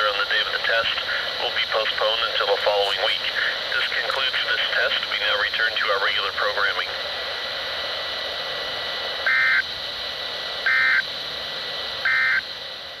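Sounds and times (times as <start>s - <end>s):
radio hiss: 0.0s - 13.0s
buzzing data bursts: 9.2s - 9.7s, 10.6s - 11.1s, 12.0s - 12.5s.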